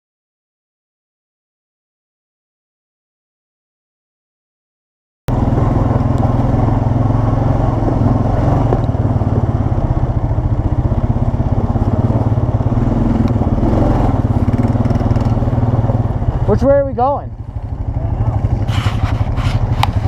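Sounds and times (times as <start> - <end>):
engine drone: 5.3 - 20.0.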